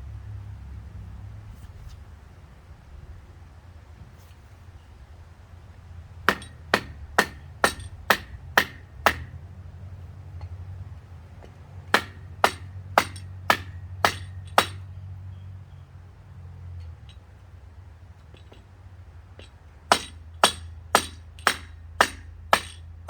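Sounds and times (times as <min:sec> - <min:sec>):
metal-on-metal strikes: 0:06.3 - 0:09.3, 0:11.9 - 0:15.0, 0:19.4 - 0:22.9.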